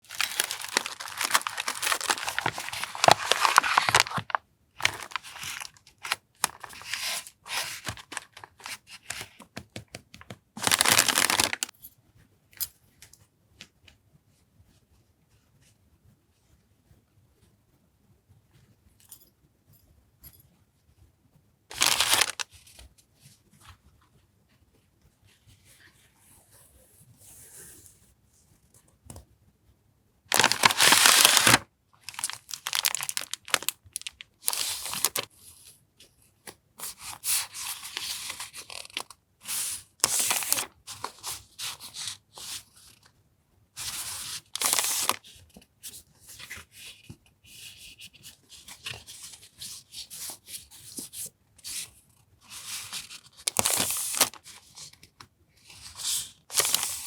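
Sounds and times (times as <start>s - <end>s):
packaging rustling and tearing: 0.0s - 9.5s, 10.2s - 11.7s, 21.7s - 22.5s, 30.3s - 35.3s, 37.0s - 42.6s, 43.8s - 45.2s, 52.6s - 54.8s, 55.9s - 57.0s.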